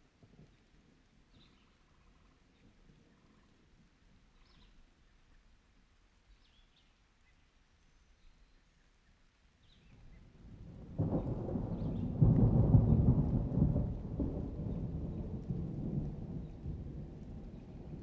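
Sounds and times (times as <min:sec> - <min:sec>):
thunder rumbling: 0:10.4 - 0:18.0.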